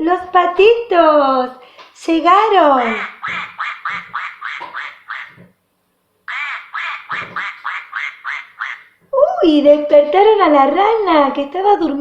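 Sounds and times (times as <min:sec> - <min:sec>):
recorded duck quacking: 0:02.7 - 0:05.6, 0:06.3 - 0:09.0.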